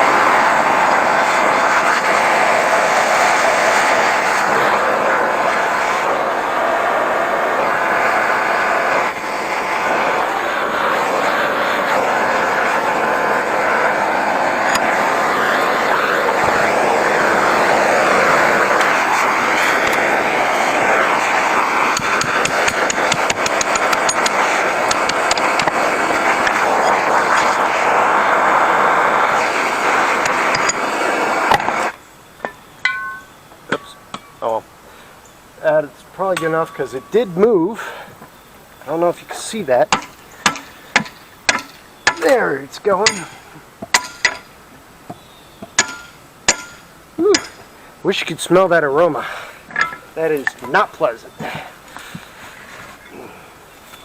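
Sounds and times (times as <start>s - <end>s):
blowtorch flame hissing: 0.0s - 32.0s, 33.6s - 54.0s.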